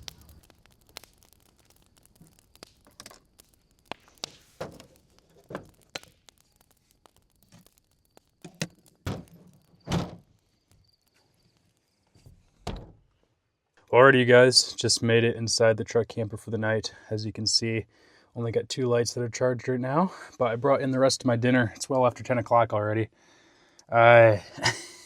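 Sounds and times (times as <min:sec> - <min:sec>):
clicks and knocks of handling: 0:08.4 - 0:09.7.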